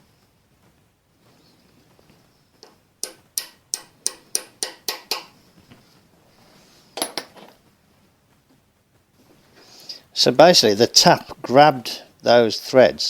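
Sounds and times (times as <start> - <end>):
sharp metallic taps on metal: 2.6 - 5.3
metal clinks rattling: 7.0 - 7.6.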